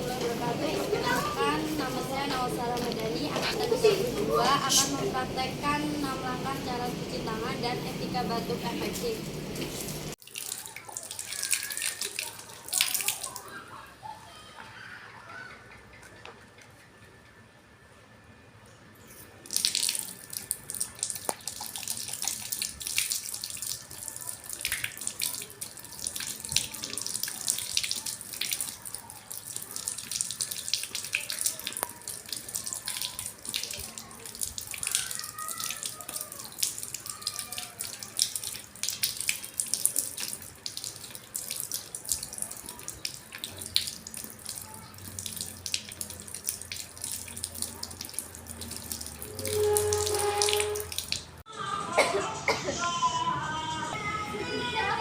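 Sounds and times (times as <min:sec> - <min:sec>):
tap water running into sink: 0:19.5 - 0:51.3.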